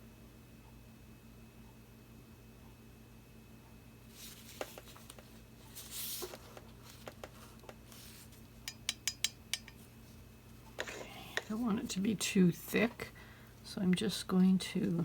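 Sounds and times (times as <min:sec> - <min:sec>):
tool scraping paint cup: 0:10.8 - 0:11.6.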